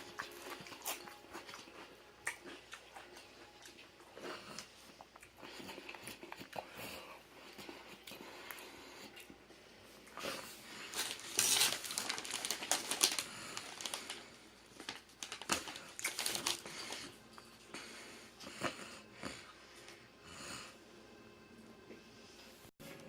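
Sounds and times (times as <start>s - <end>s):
chips being chewed: 0.0s - 9.4s, 10.1s - 17.6s.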